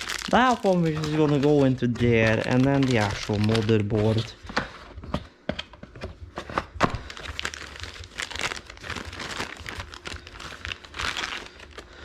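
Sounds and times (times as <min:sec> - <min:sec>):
plastic packaging crinkling: 0:00.0 - 0:04.4, 0:06.9 - 0:12.0.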